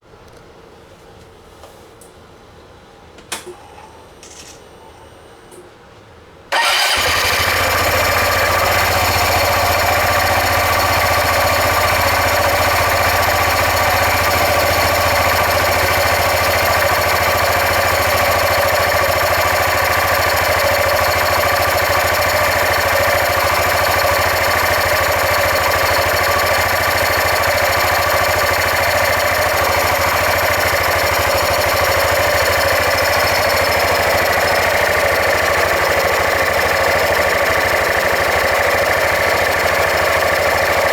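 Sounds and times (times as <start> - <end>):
fast rattling clatter from drive: 6.5 - 40.9
scooter engine running: 6.5 - 40.9.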